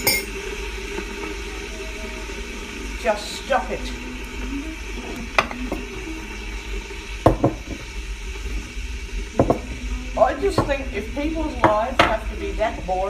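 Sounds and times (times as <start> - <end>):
kitchenware clicking: 0.0 - 0.4.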